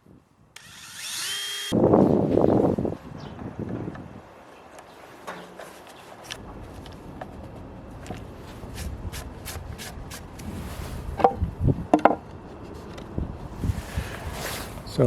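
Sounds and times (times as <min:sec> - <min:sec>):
wooden boards knocking: 0:11.2 - 0:12.2.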